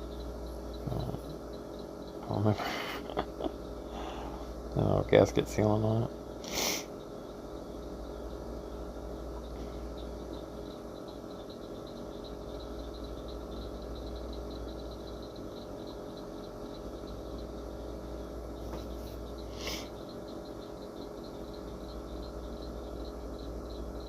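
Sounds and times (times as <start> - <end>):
high-pitched chirping pulse: 0.0 - 24.0
low electrical hum: 0.0 - 24.0
short breathy hiss: 6.4 - 6.9.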